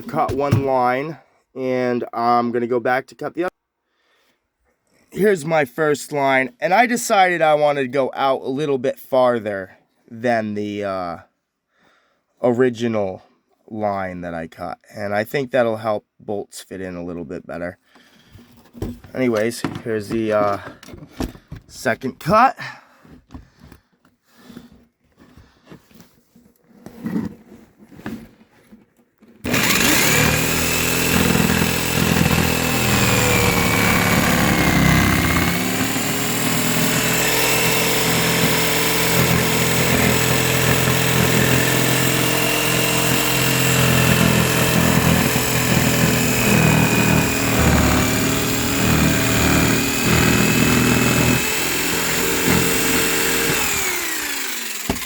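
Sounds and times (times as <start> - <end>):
power saw cutting: 0.0 - 0.9, 29.4 - 55.0.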